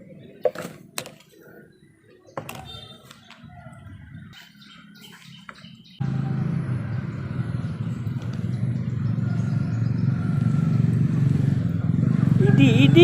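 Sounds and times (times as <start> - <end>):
vehicle engine humming: 5.8 - 13.0.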